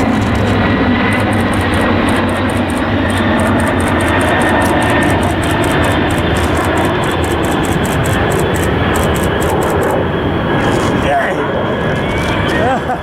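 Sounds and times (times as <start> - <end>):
fast high ticks: 0.0 - 10.0
jet engines roaring overhead: 0.0 - 13.0.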